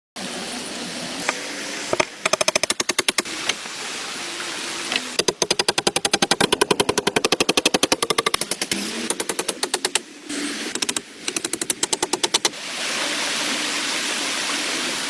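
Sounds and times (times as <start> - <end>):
rain hiss: 0.2 - 5.8, 8.2 - 15.0
fast even clicking: 2.0 - 3.3, 5.2 - 10.1, 10.7 - 12.5.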